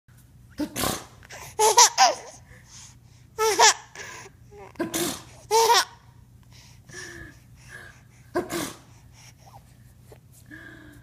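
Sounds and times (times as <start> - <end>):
person fake sneezing: 0.5 - 1.2, 4.8 - 5.4, 8.4 - 8.9
baby giggling: 1.4 - 2.4, 3.4 - 4.0, 5.5 - 6.0.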